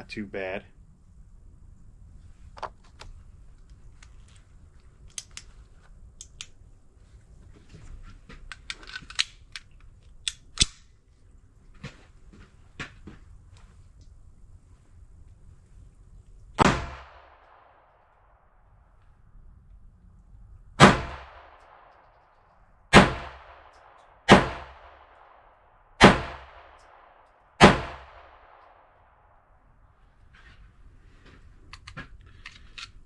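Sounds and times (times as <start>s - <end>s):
pistol shots with echo: 20.8s - 21.9s, 22.9s - 25.4s, 26.0s - 28.9s.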